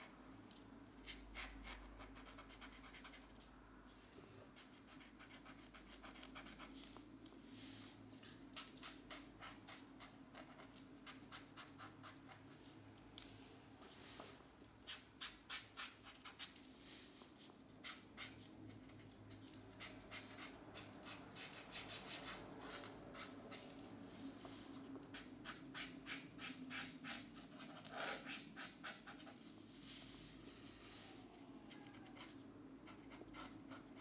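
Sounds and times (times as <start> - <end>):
markers scratching on paper: 1.0 - 3.4, 4.6 - 7.0, 8.5 - 12.8, 14.8 - 30.2, 31.9 - 34.0.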